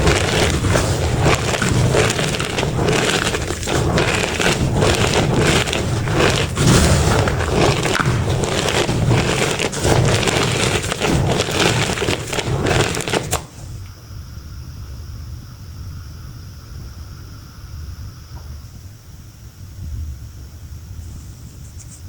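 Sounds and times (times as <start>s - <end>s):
powder blocks crunching: 0.0s - 13.7s.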